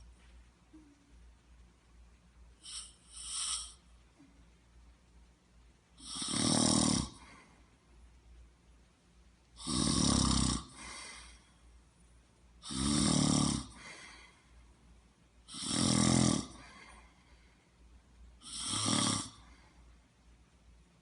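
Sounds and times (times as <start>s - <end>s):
quiet breath: 2.4s - 4.8s, 7.1s - 8.2s, 10.7s - 12.6s, 13.6s - 15.5s, 16.5s - 18.7s, 19.3s - 20.8s
person snoring: 2.6s - 3.9s, 6.0s - 7.6s, 9.6s - 11.4s, 12.6s - 14.3s, 15.5s - 17.0s, 18.4s - 19.5s.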